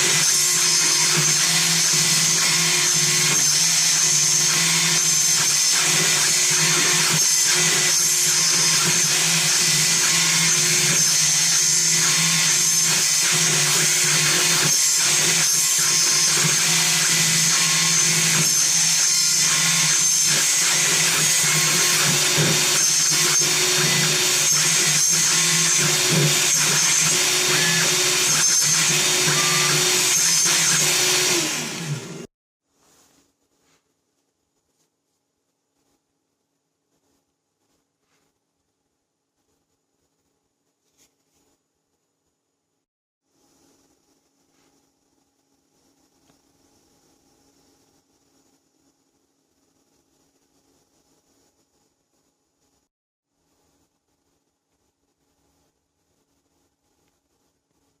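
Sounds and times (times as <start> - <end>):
cnc router milling wood: 0.0 - 32.3.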